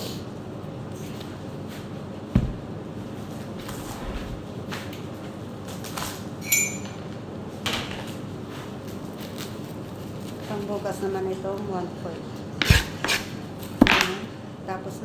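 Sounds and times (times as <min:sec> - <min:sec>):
knock: 0:02.4 - 0:02.7
heavy thump: 0:02.4 - 0:03.0
ringing clink of glass or metal: 0:06.4 - 0:07.0.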